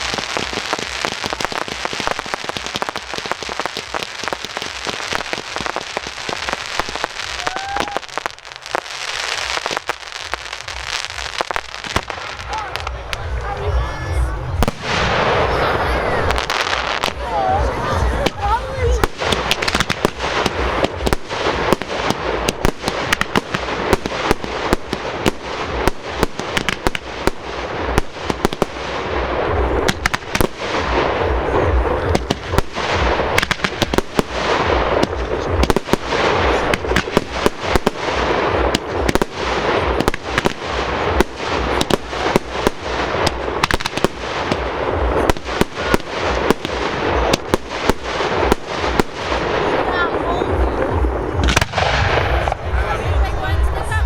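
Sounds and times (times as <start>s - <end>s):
fireworks shells bursting: 0.0s - 13.4s
fireworks crackling: 0.0s - 54.0s.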